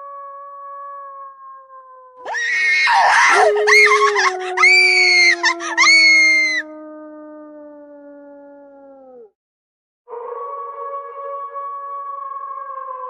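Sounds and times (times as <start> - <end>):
high-pitched screaming: 2.3 - 6.6
low ghostly howl: 2.3 - 9.3.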